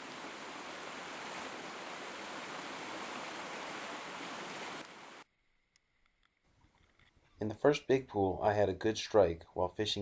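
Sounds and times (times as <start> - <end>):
creek water running: 0.0 - 5.2.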